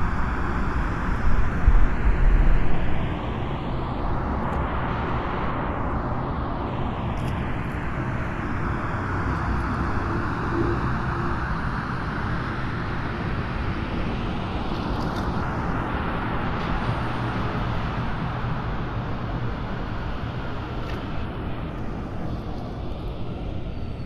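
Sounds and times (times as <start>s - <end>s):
low traffic rumble: 0.0s - 24.0s.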